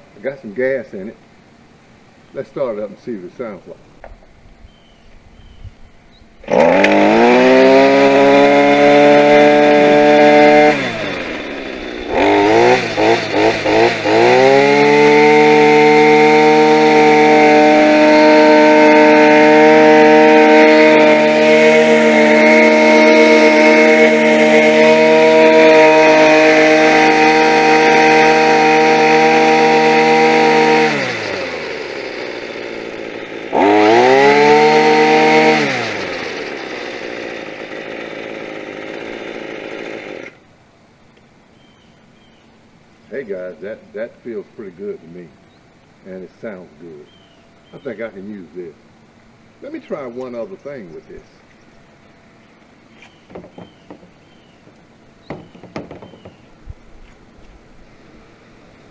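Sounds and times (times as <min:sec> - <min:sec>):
two-stroke trimmer engine revving: 0:06.4 - 0:40.4, 0:55.2 - 0:56.5.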